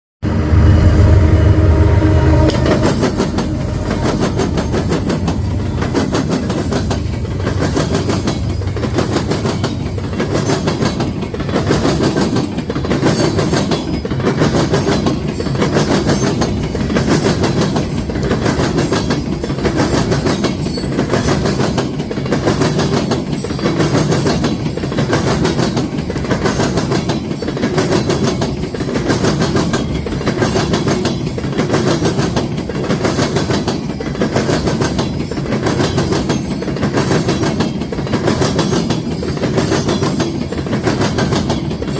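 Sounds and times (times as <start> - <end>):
low pitched tone: 0.2 - 6.4.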